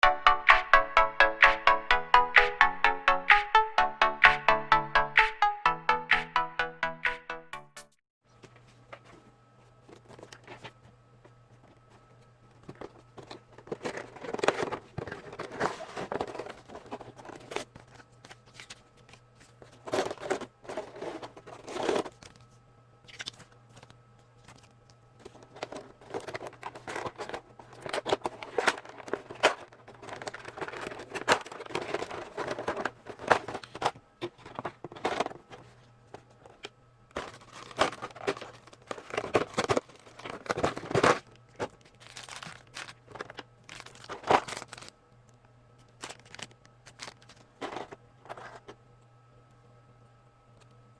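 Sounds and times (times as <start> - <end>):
faint steady hum: 8.3 - 50.9
packaging crinkling and tearing: 13.0 - 24.7, 37.1 - 45.0, 45.8 - 48.6.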